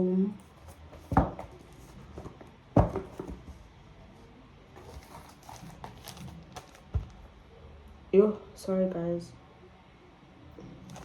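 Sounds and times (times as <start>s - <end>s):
rustling of book covers: 0.4s - 3.6s, 4.7s - 7.3s
books thudding down: 0.7s - 3.6s, 4.8s - 7.2s.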